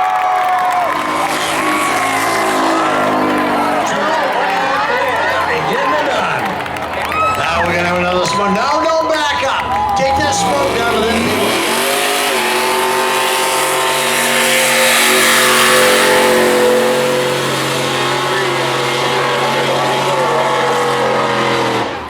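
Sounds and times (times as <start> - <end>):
racing truck engines revving: 0.0 - 22.0.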